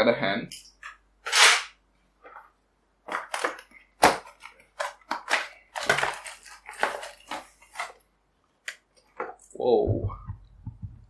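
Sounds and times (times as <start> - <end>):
objects rustling and knocking: 2.2 - 8.1, 8.7 - 11.0.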